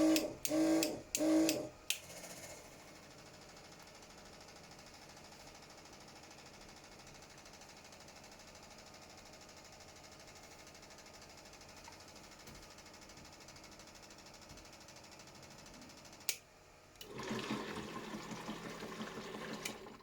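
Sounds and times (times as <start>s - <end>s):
washing machine spinning: 17.0s - 20.0s.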